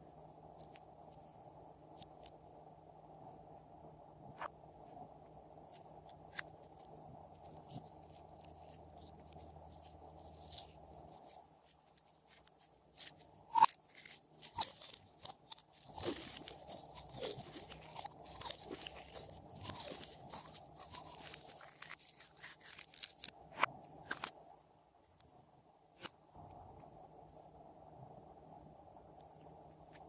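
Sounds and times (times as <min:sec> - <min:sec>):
slime crackling and popping: 0:07.4 - 0:23.3.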